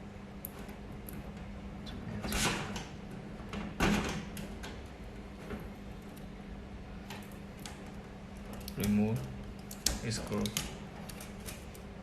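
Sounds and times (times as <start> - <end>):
steady low hum: 0.0 - 12.0
oven casing parts scraping: 2.1 - 4.6.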